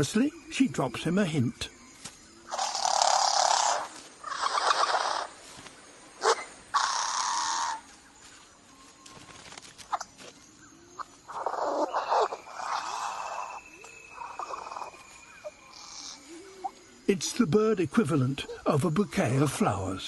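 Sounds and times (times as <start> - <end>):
bird hiss-like calls: 2.5 - 7.9, 11.3 - 16.4.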